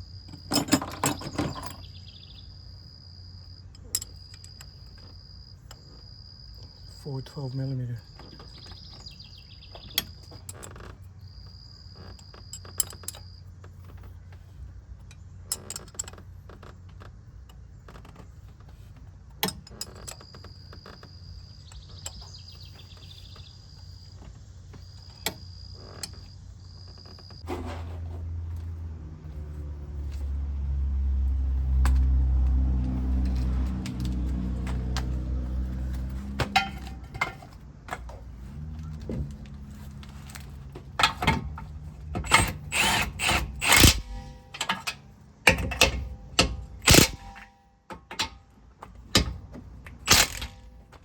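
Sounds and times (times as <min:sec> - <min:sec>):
crickets chirping: 0:00.0 - 0:27.5
low droning hum: 0:27.3 - 0:47.6
wrench clicking on metal: 0:42.2 - 0:47.5, 0:50.1 - 0:50.7.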